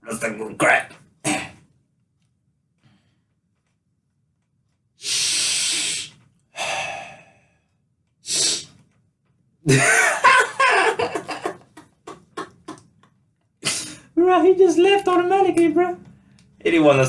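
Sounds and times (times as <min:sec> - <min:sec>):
man sniffing hard: 0:05.0 - 0:07.4, 0:08.2 - 0:08.8, 0:13.6 - 0:14.1
breathy gasping voice: 0:05.0 - 0:07.6.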